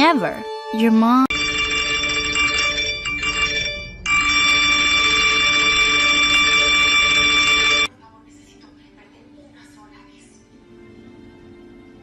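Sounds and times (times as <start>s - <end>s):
electronic bell-like ringing tone: 1.3s - 7.9s.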